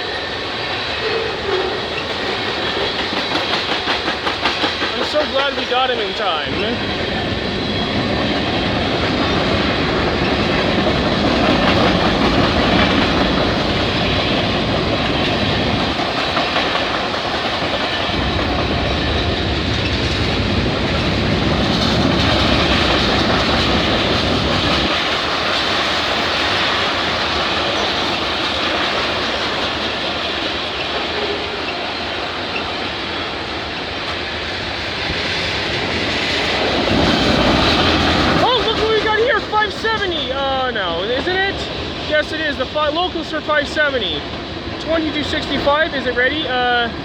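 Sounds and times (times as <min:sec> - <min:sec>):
wheels clicking over rail joints: 0:01.0 - 0:06.6, 0:08.4 - 0:34.3
freight cars rumbling and rattling: 0:01.1 - 0:47.0.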